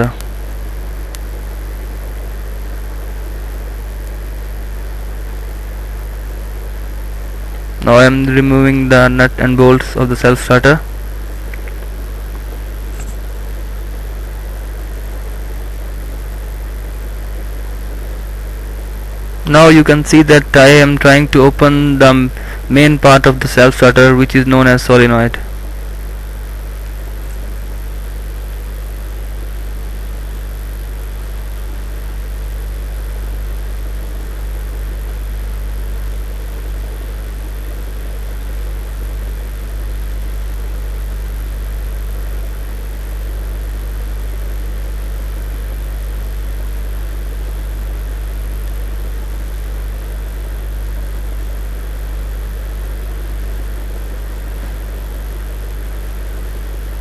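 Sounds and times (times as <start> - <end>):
steady low hum: 0.0 - 57.0
even hiss: 7.6 - 27.6.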